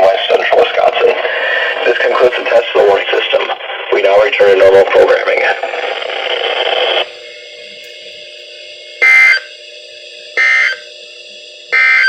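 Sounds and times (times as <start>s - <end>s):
steady low hum: 0.0s - 12.0s
short data code bursts: 9.0s - 9.5s.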